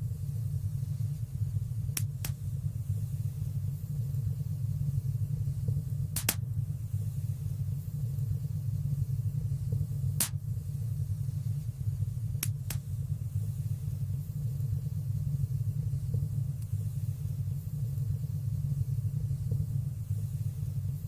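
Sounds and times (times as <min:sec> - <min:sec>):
fire rumbling in fireplace: 0:00.0 - 0:21.0
fire crackling pops: 0:01.8 - 0:02.6, 0:05.7 - 0:06.7, 0:10.1 - 0:10.6, 0:12.2 - 0:13.2.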